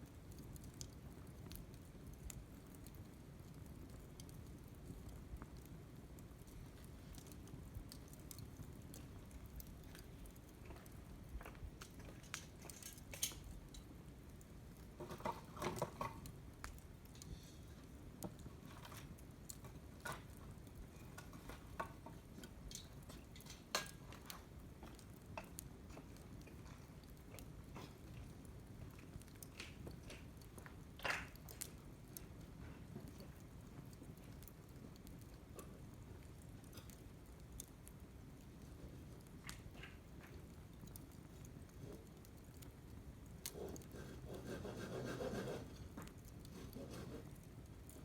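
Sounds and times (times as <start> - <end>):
fire rumbling: 0.0 - 48.0
wood fire crackling and popping: 0.0 - 48.0.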